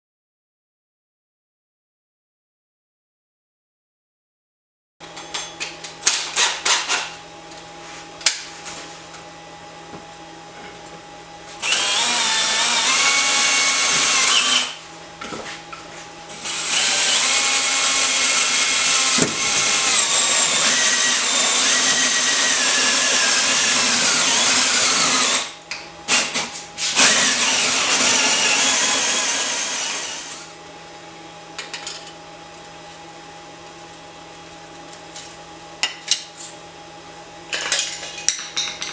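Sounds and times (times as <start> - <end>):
steady low hum: 7.1 - 12.2, 30.5 - 38.8
electric drill boring: 11.6 - 14.8, 16.3 - 30.5.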